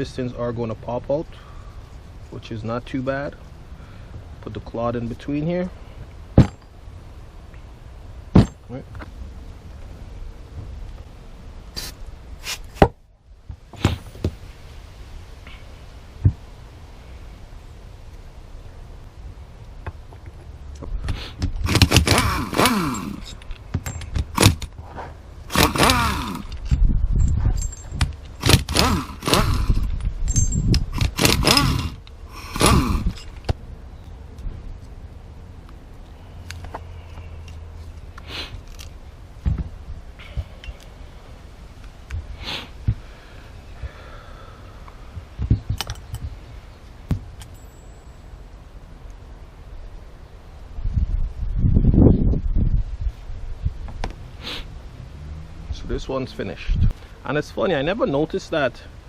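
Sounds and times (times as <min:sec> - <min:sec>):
sharp metal knocks: 0:06.4 - 0:06.7, 0:08.3 - 0:08.7
short hiss: 0:11.7 - 0:12.8, 0:38.2 - 0:38.7, 0:42.4 - 0:42.8, 0:54.4 - 0:54.7
metal parts scraping and rattling: 0:21.6 - 0:33.5, 0:38.6 - 0:39.0.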